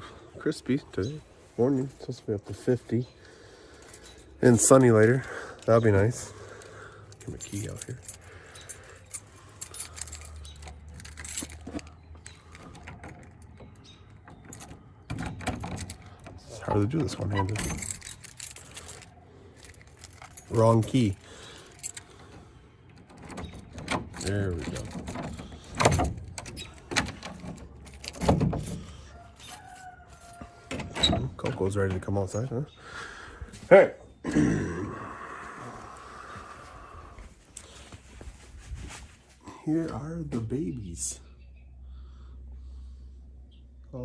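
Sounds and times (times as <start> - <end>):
keys jangling: 3.6 - 31.3
lock clicks and door knocks: 22.9 - 28.9.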